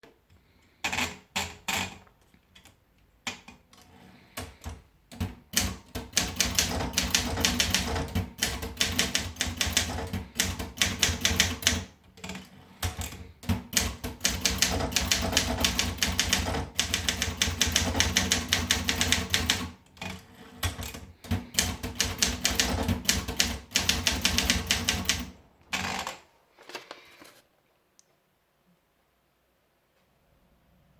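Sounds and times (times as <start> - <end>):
typewriter typing: 4.4 - 26.2.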